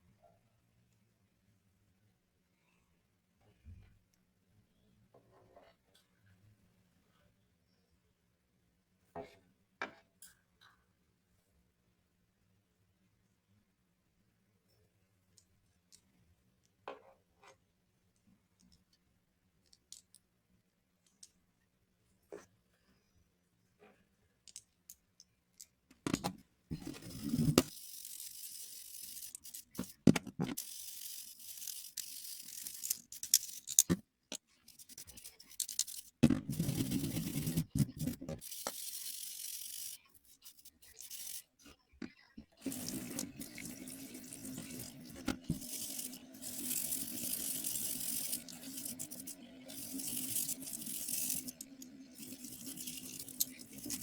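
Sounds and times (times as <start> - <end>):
scrubbing on metal pliers: 26.7 - 54.0.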